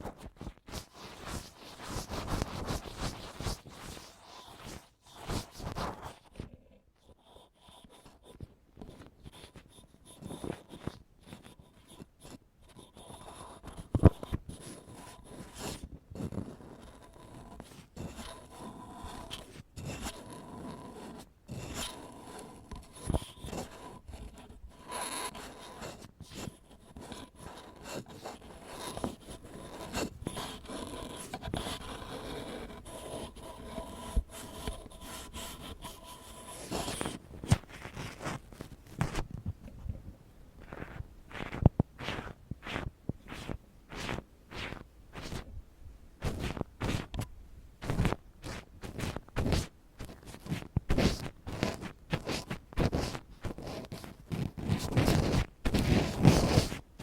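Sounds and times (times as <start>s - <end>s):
ear pick scraping microphone: 0.0s - 6.2s, 21.5s - 40.0s, 40.6s - 45.5s, 46.2s - 56.9s.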